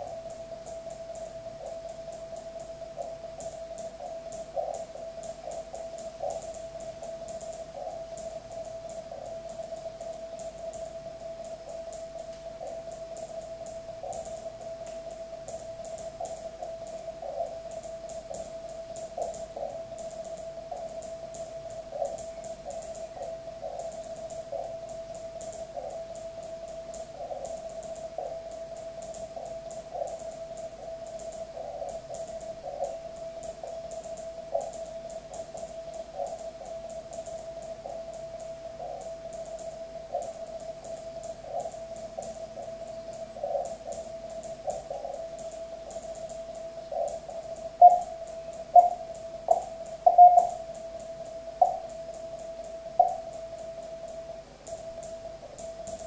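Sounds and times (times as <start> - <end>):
radio band noise hiss: 0.0 - 0.3, 29.3 - 56.0.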